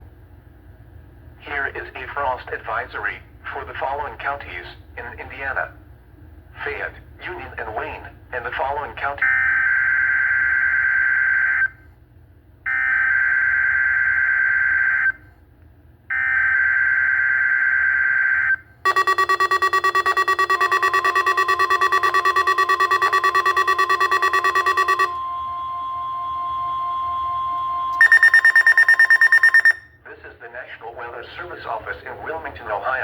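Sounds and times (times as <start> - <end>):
screeching digital data bursts: 18.9 - 25.2, 28.0 - 29.8
steady electronic tone: 18.9 - 29.8
rapidly pulsing electronic alarm beep: 18.9 - 29.9.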